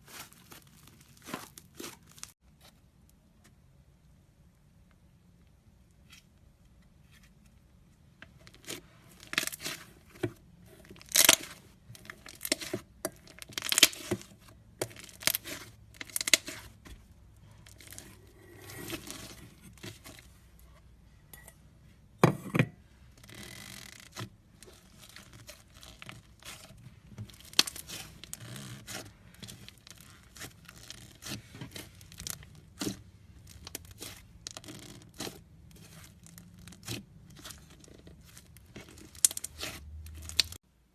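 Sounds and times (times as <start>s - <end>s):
slime squeezed with wet crackles: 23.9s - 40.6s.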